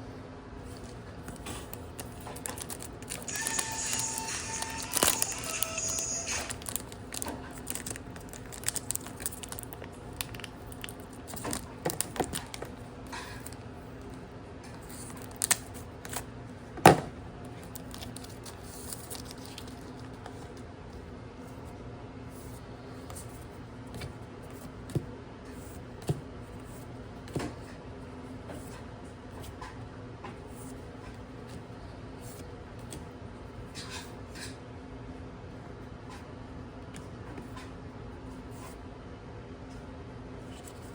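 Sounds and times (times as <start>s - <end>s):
packaging crinkling: 0.8s - 12.8s, 15.0s - 16.3s, 17.6s - 20.3s.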